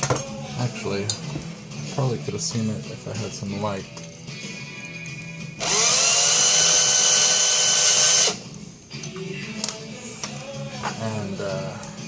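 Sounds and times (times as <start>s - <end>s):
small electric drill whining: 5.6s - 8.4s.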